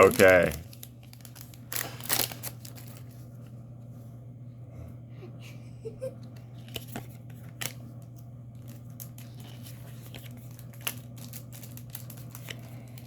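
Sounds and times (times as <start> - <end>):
wrapper crinkling: 0.0 - 3.2, 8.6 - 13.0
steady low hum: 0.0 - 13.0
cards being handled: 6.5 - 13.0.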